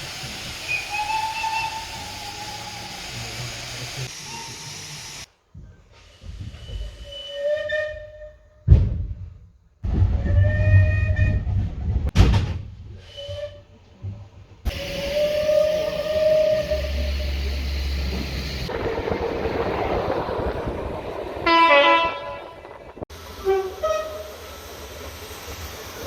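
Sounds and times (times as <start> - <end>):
steam locomotive whistle: 0.0 - 5.3, 14.7 - 18.7, 21.4 - 24.9
loud burst of noise: 14.7 - 23.4.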